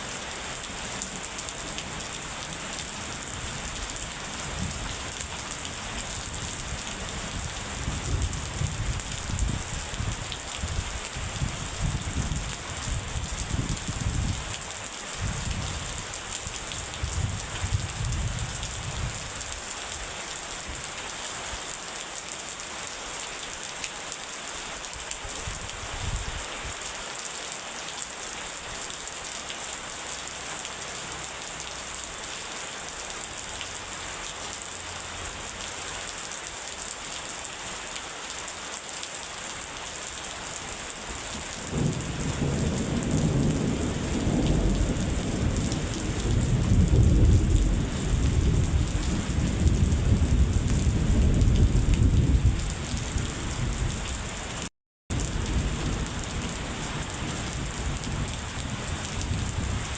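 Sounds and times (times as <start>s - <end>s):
heavy rain falling: 0.0s - 59.9s
thunder rumbling: 41.7s - 54.1s, 55.1s - 59.9s.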